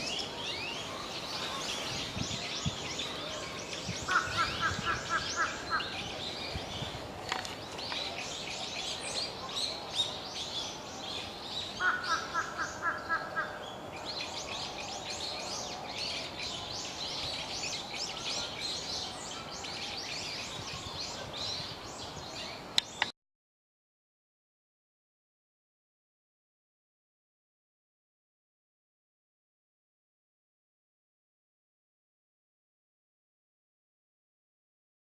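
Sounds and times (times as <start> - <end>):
low repeated bird call: 0.0 - 14.1
birds chirping and calling: 0.0 - 23.1.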